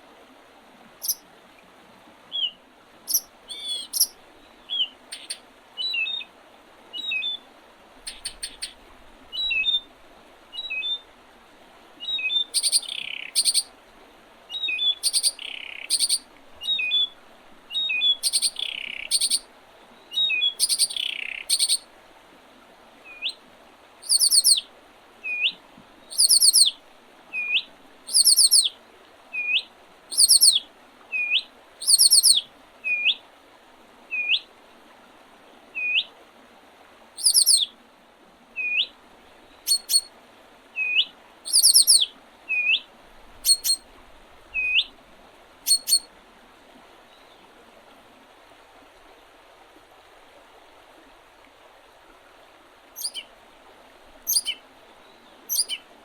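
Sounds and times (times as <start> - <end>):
small songbirds singing: 2.3 - 6.3, 8.0 - 8.8, 12.0 - 13.7, 14.5 - 19.5, 20.1 - 21.8, 24.0 - 24.6, 26.1 - 26.8, 27.4 - 28.7, 29.4 - 30.6, 31.2 - 33.2, 37.2 - 37.7, 39.6 - 40.1, 40.8 - 42.8, 43.4 - 43.8, 45.7 - 46.1, 53.0 - 53.2, 54.3 - 55.8
upward-hooked bird call: 3.1 - 4.1, 4.7 - 6.3, 8.0 - 8.8, 12.1 - 13.7, 14.6 - 17.1, 17.8 - 19.4, 20.2 - 21.8, 24.0 - 24.6, 26.1 - 26.7, 27.4 - 28.7, 29.4 - 30.6, 31.2 - 33.2, 37.2 - 37.7, 39.7 - 40.1, 40.8 - 42.8, 43.4 - 43.8, 45.7 - 46.1, 53.0 - 53.2, 54.3 - 54.6, 55.5 - 55.8.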